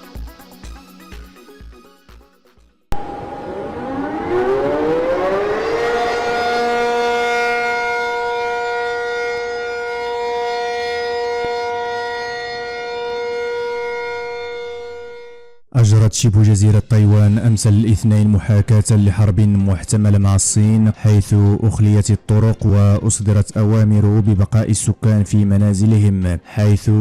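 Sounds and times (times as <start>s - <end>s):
air-raid siren wailing: 2.9s - 15.6s.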